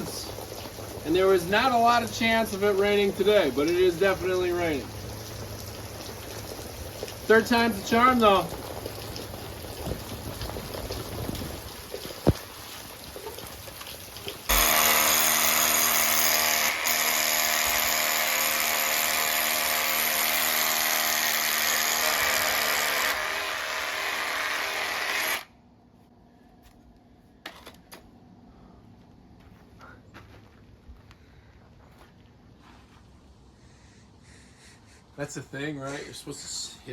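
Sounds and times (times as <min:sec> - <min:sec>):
light rain pattering: 0:00.0 - 0:14.5
power drill running: 0:14.5 - 0:25.5.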